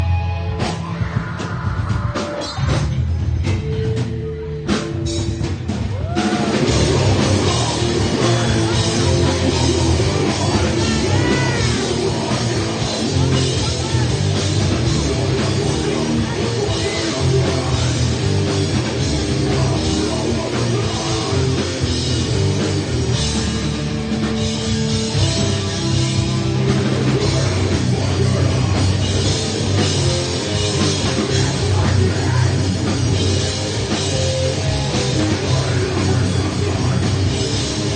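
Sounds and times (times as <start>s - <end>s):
drum kit: 0.0s - 37.9s
heavy metal band playing live: 0.0s - 37.9s.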